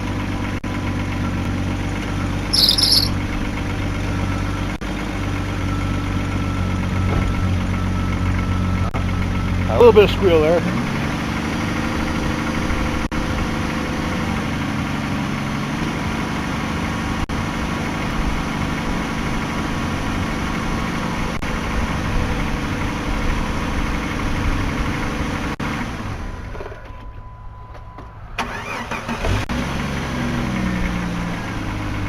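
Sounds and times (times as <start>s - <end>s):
belt squeal: 2.5s - 3.1s.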